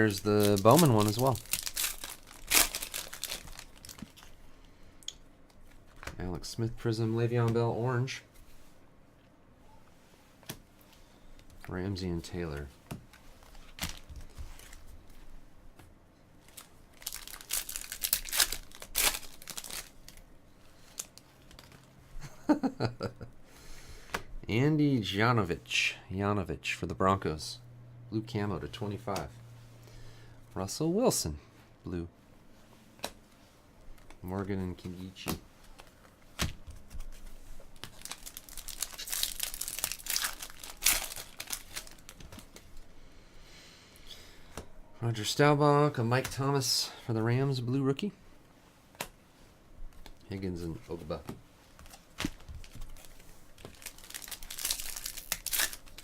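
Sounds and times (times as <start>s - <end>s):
wrapper tearing and crinkling: 0.0s - 4.4s, 13.6s - 14.8s, 16.5s - 20.2s, 20.8s - 21.9s, 37.8s - 42.5s, 51.8s - 56.0s.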